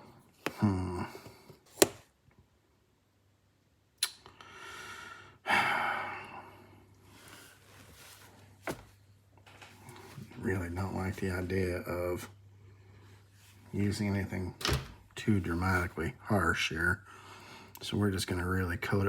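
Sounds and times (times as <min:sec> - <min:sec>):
person grunting: 0:00.5 - 0:01.2
long breathy sigh: 0:04.4 - 0:06.8.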